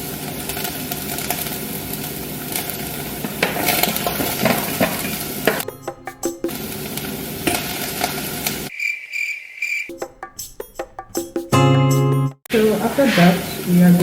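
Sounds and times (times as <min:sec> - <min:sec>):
food sizzling in hot oil: 0:00.0 - 0:08.7.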